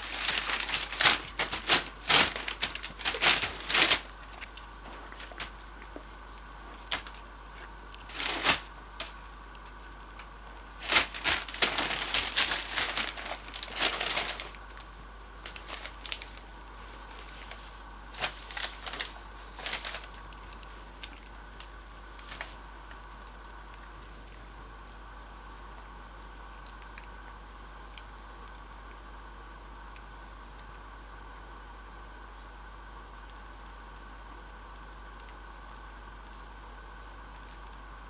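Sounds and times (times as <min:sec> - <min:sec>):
puppies rustling and crinkling: 0:00.0 - 0:25.0.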